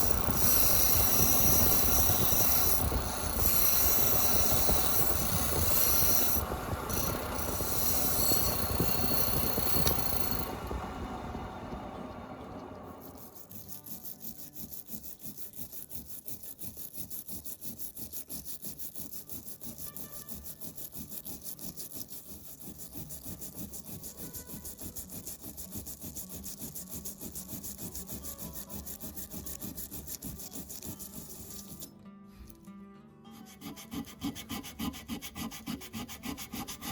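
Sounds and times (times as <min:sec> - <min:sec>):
abrasive rubbing on metal: 0:00.0 - 0:10.6, 0:13.0 - 0:32.6, 0:33.3 - 0:36.9.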